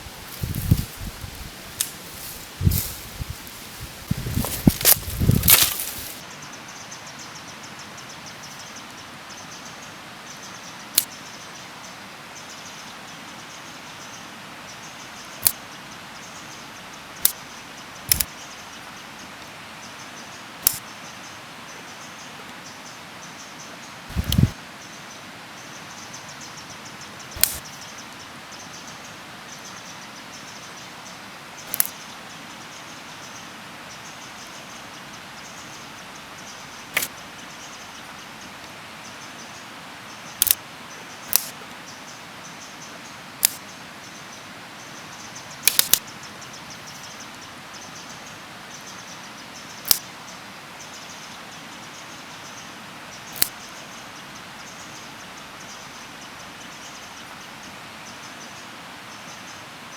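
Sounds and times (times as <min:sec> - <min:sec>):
insects chirring: 0:00.0 - 0:06.2, 0:24.1 - 0:24.6, 0:27.4 - 0:27.9, 0:40.3 - 0:41.6, 0:43.4 - 0:43.7.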